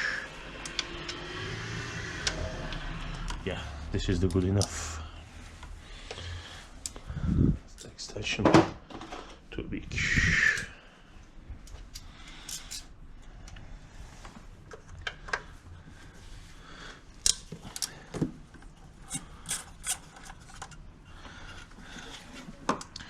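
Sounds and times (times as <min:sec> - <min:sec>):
metal socket tools clinking: 0:11.9 - 0:12.9.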